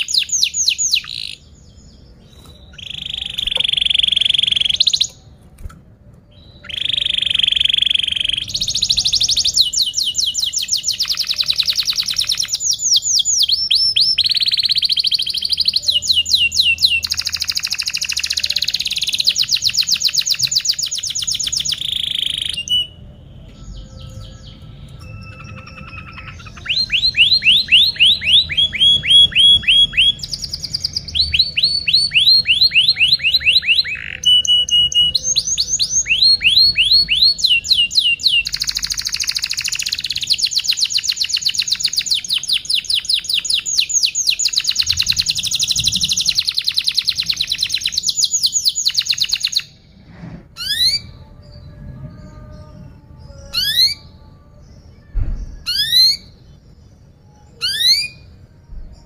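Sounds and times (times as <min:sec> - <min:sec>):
canary singing: 0:00.0 - 0:59.0.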